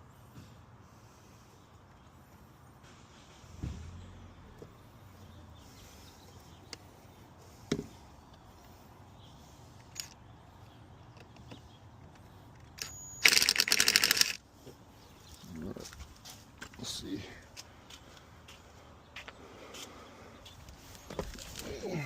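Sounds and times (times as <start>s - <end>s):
ratchet wrench clicking rapidly: 12.8s - 14.4s.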